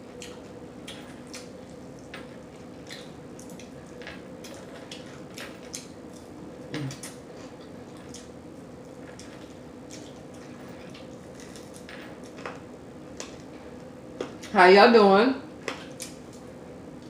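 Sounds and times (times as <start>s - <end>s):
faint steady hum: 0.0s - 17.0s
person chewing with wet smacks: 0.1s - 2.1s, 2.8s - 3.8s, 4.4s - 11.2s.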